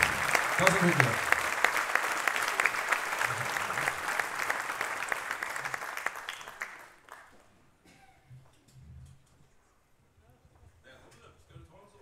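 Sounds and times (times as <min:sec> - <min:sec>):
audience applauding: 0:00.0 - 0:07.5.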